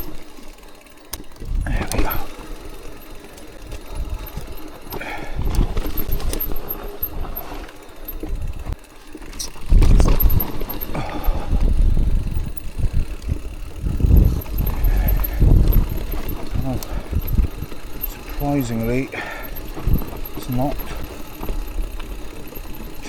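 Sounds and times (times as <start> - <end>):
bike rattles and knocks: 0.0 - 23.0
bike tyre noise: 0.0 - 23.0
wind rumbling on microphone: 9.6 - 18.8, 19.4 - 22.9.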